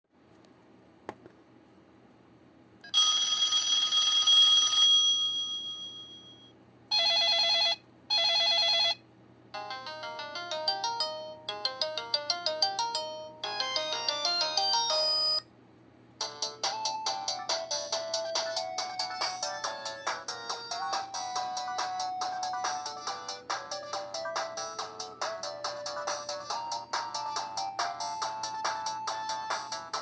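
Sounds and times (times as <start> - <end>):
phone chime: 2.9 - 9.0, 9.6 - 15.5
electronic ringtone melody: 9.6 - 15.5, 16.2 - 30.0.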